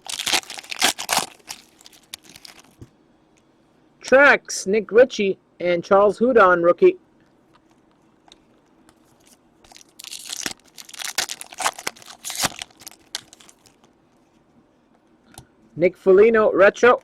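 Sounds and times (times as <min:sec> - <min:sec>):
wrapper being torn and crinkled: 0:00.0 - 0:02.8, 0:09.0 - 0:13.9.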